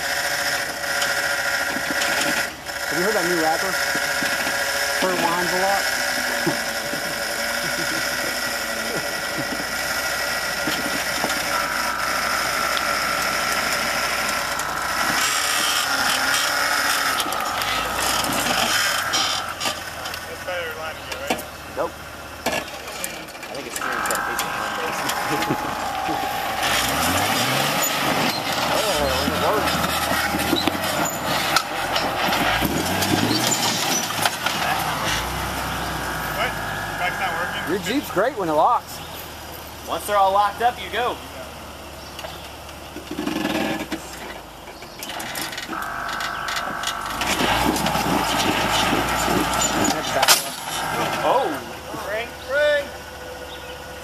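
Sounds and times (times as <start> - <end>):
off-road vehicle engine running: 0.0 - 54.0
steady high whine: 4.3 - 20.6, 22.6 - 38.4, 45.0 - 52.3.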